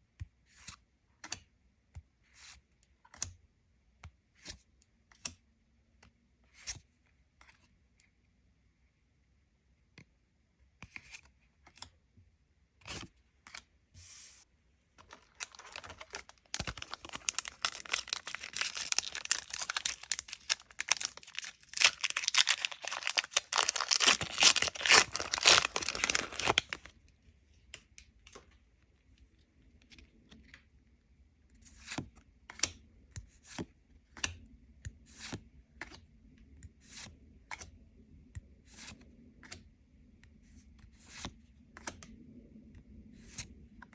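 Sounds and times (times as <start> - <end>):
cards and packaging tapping: 15.0 - 26.9
wrapper tearing and crinkling: 15.1 - 26.9.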